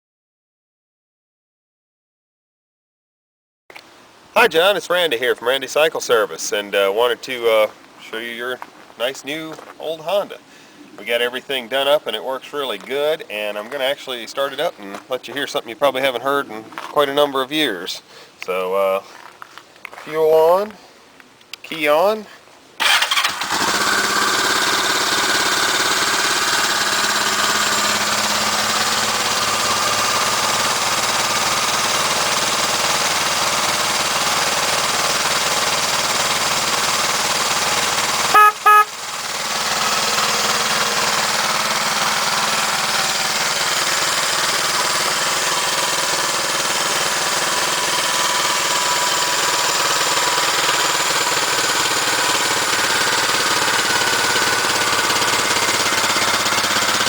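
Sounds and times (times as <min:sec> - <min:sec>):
motorcycle engine running: 0:22.8 - 0:57.0
motorcycle horn beeps: 0:38.3 - 0:39.0.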